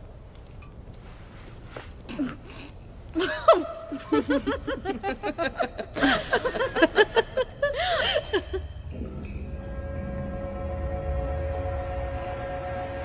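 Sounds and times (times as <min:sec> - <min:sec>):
people laughing: 0:03.2 - 0:08.8.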